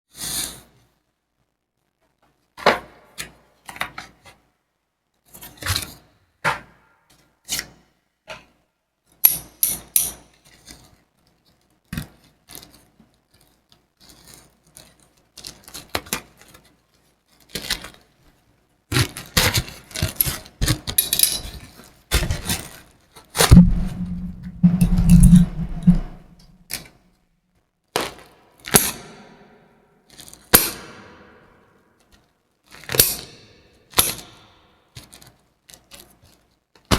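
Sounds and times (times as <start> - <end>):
low rubbing: 23.5 - 26.5.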